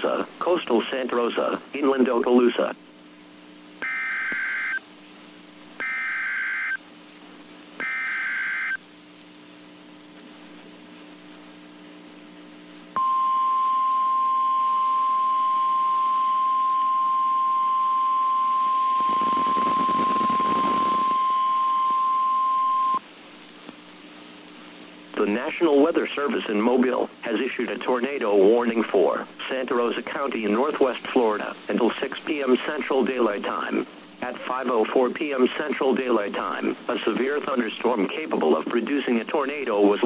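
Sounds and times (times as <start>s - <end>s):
static rush: 0.0s - 13.0s, 14.8s - 40.0s
radio hiss and hum: 0.0s - 40.0s
data bursts: 3.8s - 4.8s, 5.8s - 6.8s, 7.8s - 8.8s, 13.0s - 23.0s
weather radio alarm tone: 3.8s - 4.8s, 5.8s - 6.8s, 7.8s - 8.8s, 13.0s - 23.0s.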